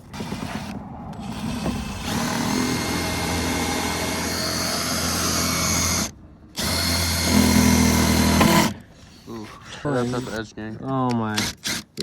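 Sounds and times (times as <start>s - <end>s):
power drill running: 0.1s - 8.8s.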